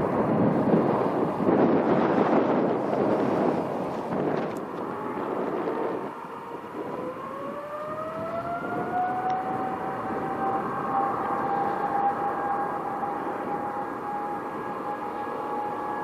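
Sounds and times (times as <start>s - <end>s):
jet engines spooling up: 0.0s - 16.0s.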